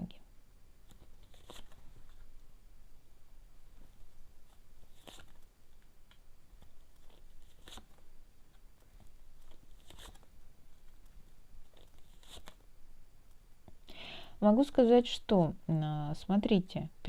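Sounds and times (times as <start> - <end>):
cards swishing and snapping: 0.8 - 2.3, 3.8 - 5.5, 6.1 - 12.6.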